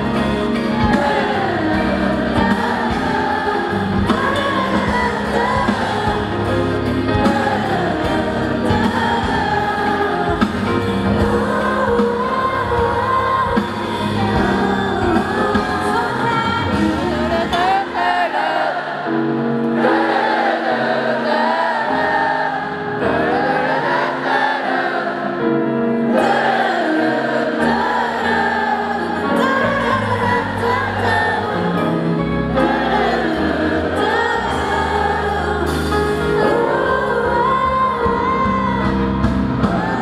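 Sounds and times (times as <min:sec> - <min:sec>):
woman singing a pop ballad: 0:00.0 - 0:18.2, 0:33.1 - 0:40.0
keyboard chords: 0:00.0 - 0:40.0.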